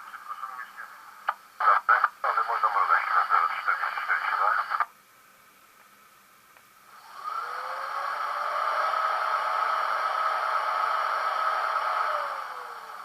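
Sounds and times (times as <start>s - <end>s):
whirring machinery sound from loudspeaker: 6.9s - 13.0s.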